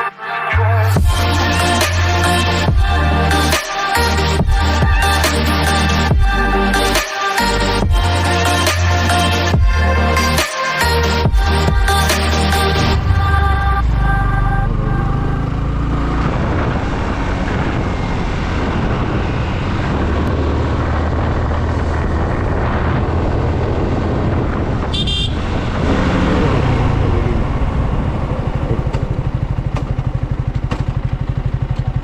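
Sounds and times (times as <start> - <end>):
motorcycle engine running: 11.2 - 32.0
motorcycle horn toot: 24.9 - 25.5.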